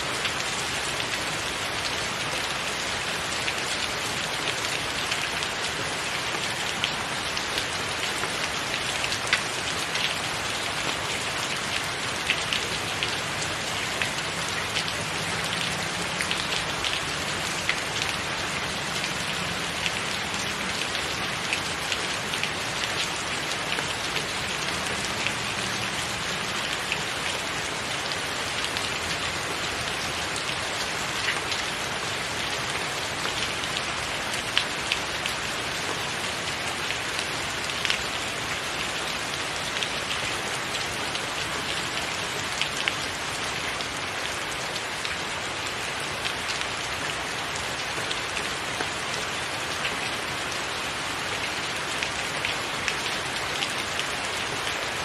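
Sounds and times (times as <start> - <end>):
steady rain: 0.0 - 55.0.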